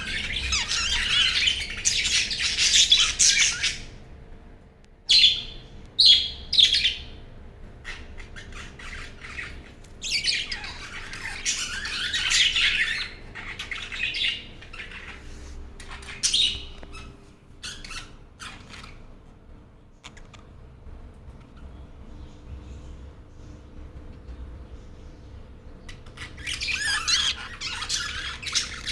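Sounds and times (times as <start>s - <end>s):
budgerigars chattering and squawking: 0.0s - 4.0s, 5.1s - 7.1s, 7.8s - 19.0s, 25.8s - 28.9s.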